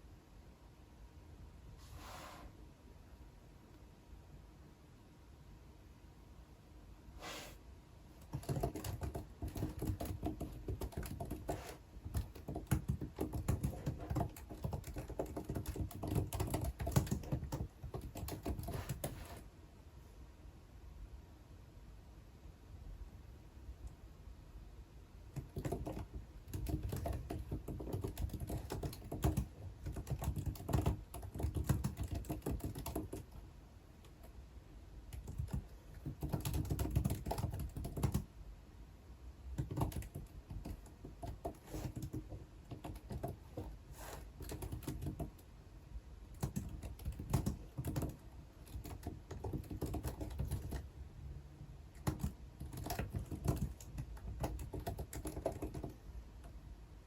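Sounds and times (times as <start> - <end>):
computer keyboard typing: 8.2 - 19.4, 25.3 - 33.4, 35.1 - 38.3, 39.5 - 45.4, 46.3 - 50.9, 51.9 - 56.5.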